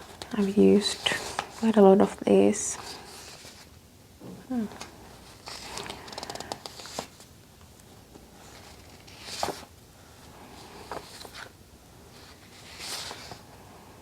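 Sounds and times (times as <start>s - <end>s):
paper pages rustling: 0.0s - 2.2s, 5.2s - 9.7s, 10.6s - 13.5s.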